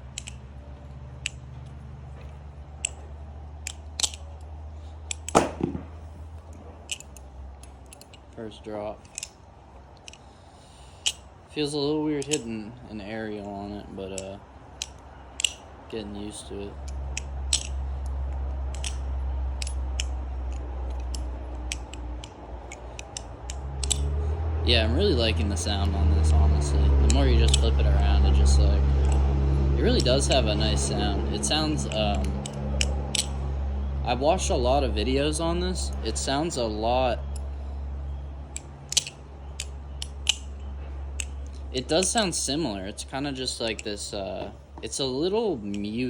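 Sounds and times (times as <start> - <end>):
butterfly knife clicks: 3.6 - 4.5, 14.2 - 15.7, 16.8 - 17.8, 18.7 - 24.2, 25.4 - 27.8, 38.5 - 40.6.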